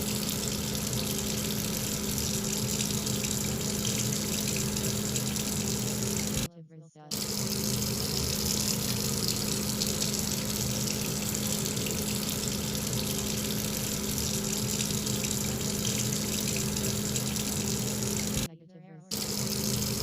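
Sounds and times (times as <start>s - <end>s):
low steady hum: 0.0s - 6.5s, 7.1s - 18.5s
rushing water: 0.0s - 6.5s, 7.1s - 18.5s, 19.2s - 20.0s.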